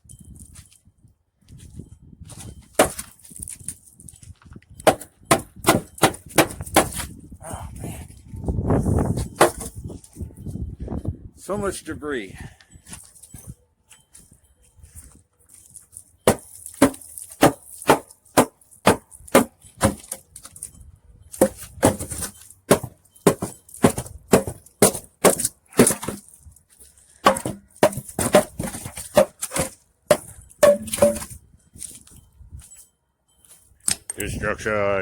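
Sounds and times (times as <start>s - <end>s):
blows knocking apart wooden boards: 16.3s - 20.2s, 21.4s - 26.2s, 27.2s - 31.4s.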